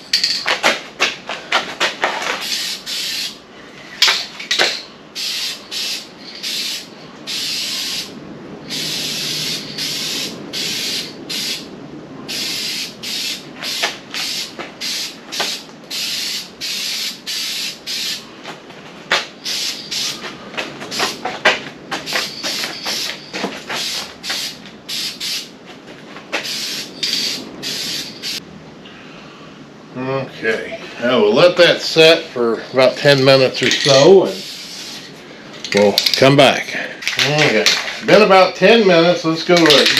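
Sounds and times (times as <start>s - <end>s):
aerosol spray can hissing: 2.4s - 3.4s, 5.2s - 8.1s, 8.7s - 11.7s, 12.3s - 18.2s, 19.4s - 20.2s, 20.9s - 21.2s, 22.0s - 25.5s, 26.4s - 28.4s, 34.3s - 35.1s.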